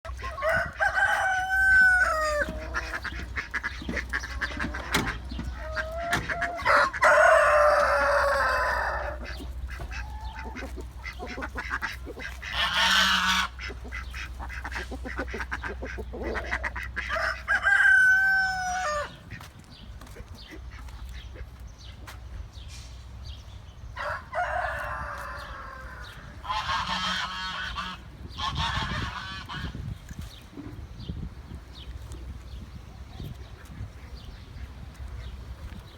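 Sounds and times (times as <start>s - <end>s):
poultry calling: 0.1s - 22.1s, 24.0s - 29.9s
chicken clucks and clicks: 0.1s - 22.3s, 24.0s - 35.9s.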